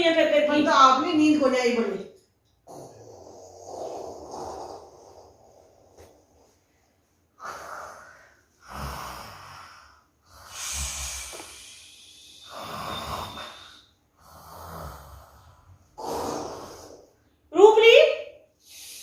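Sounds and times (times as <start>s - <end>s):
person snoring with rasping snorts: 2.6s - 6.5s, 7.4s - 17.2s.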